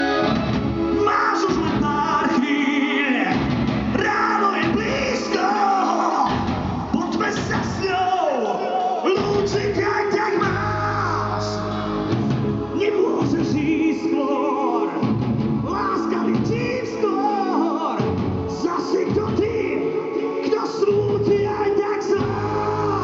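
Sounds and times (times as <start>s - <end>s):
sustained musical accompaniment: 0.0s - 8.2s, 8.9s - 23.0s.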